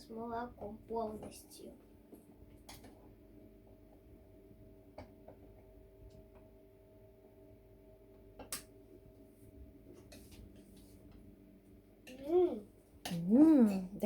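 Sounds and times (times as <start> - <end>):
low steady hum: 0.0 - 14.0.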